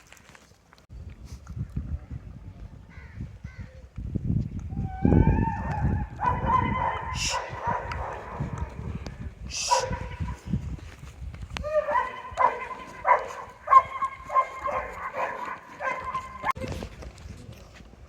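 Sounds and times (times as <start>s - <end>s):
farm animals calling: 11.6s - 16.5s.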